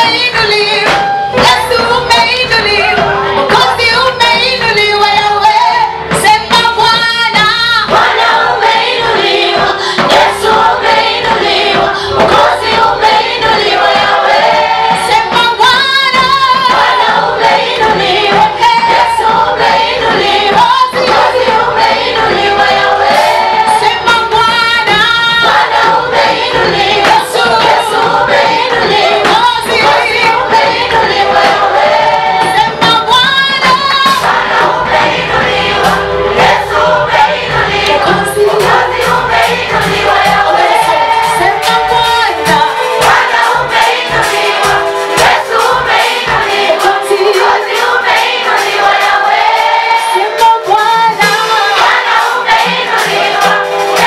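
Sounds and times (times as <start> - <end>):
choir singing gospel song: 0.0 - 54.0.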